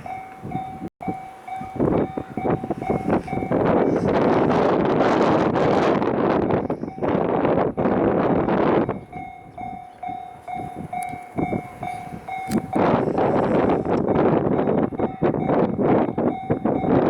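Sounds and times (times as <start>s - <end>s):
crossing warning bell ringing: 0.0s - 6.0s, 6.8s - 17.0s
freight train rumbling past: 0.0s - 17.0s.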